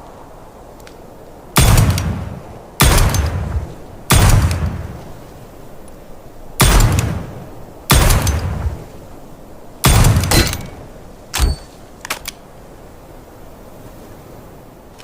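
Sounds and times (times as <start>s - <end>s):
revolver gunshots ringing: 1.6s - 4.9s, 6.6s - 8.8s, 9.8s - 10.8s.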